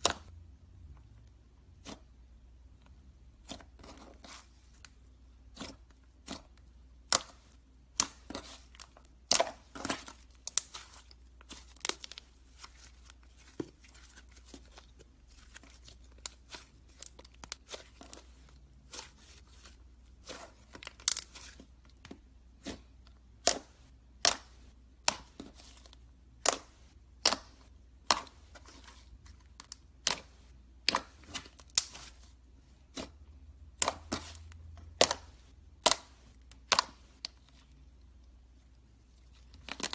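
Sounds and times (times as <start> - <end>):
slime clicking and popping: 35.0 - 37.4.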